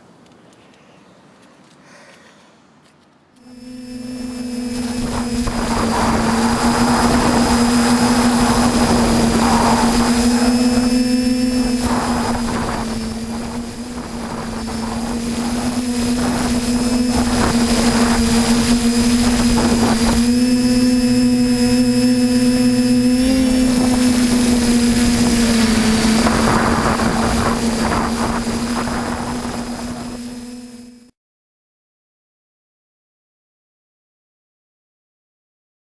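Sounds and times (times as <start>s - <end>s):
loud machine drone: 3.4s - 31.1s
noisy rushes: 3.5s - 31.1s.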